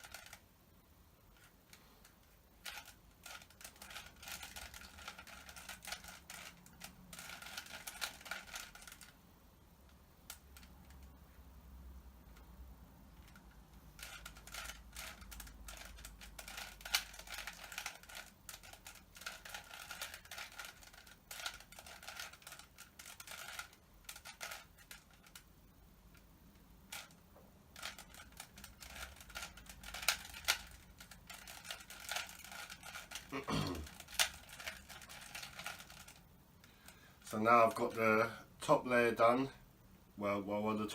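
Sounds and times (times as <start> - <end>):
puzzle cube plastic clicking: 0.0 - 0.4, 1.3 - 9.2, 13.2 - 25.5, 26.1 - 37.0.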